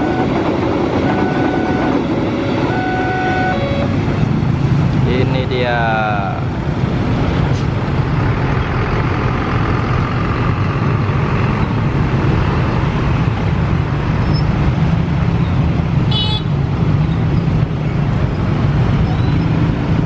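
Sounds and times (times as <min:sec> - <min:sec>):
bus engine running: 0:00.0 - 0:16.0
road traffic rumble: 0:00.0 - 0:20.0
high-pitched toot: 0:01.0 - 0:04.0.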